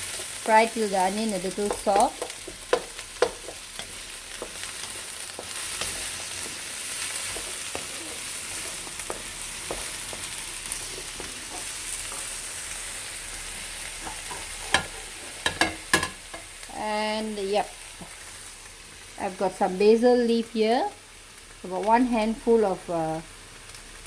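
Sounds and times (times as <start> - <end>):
vegetables sizzling in oil: 0.0 - 24.0.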